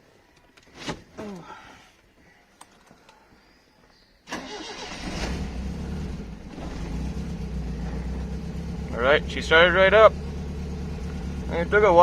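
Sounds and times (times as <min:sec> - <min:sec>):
car engine starting and idling: 0:04.3 - 0:12.0.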